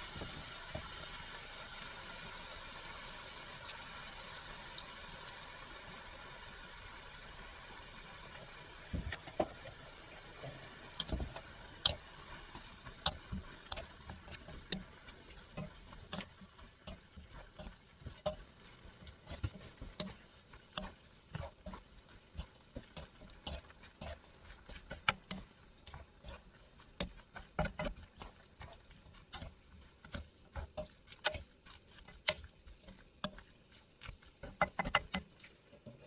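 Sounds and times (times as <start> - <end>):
utensils clicking against cookware: 11.0 - 12.0, 13.0 - 21.8, 22.8 - 35.5.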